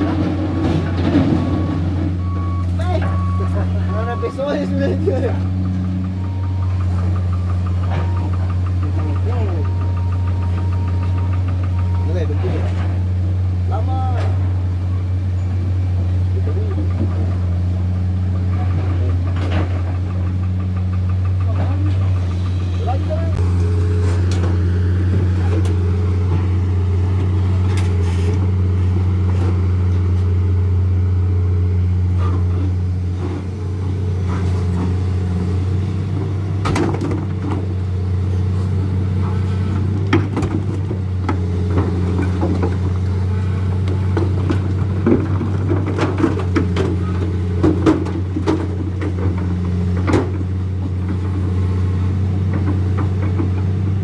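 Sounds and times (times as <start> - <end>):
diesel truck engine running: 0.0 - 54.0
knocks and clatters: 5.5 - 13.0, 18.4 - 22.6, 43.8 - 51.4.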